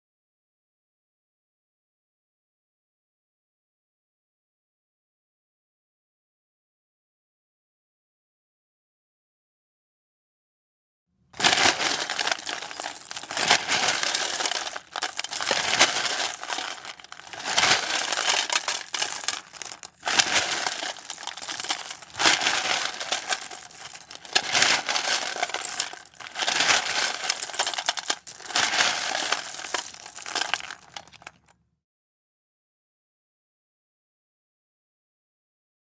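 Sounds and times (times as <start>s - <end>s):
hand rummaging through small objects: 11.4s - 31.4s.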